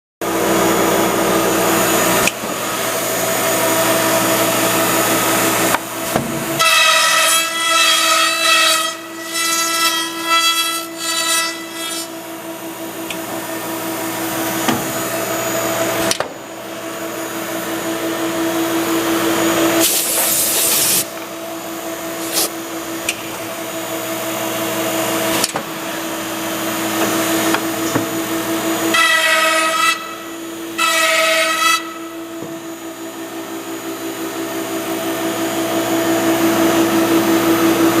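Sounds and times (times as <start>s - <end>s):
air hissing: 19.8s - 21.2s, 22.2s - 22.6s.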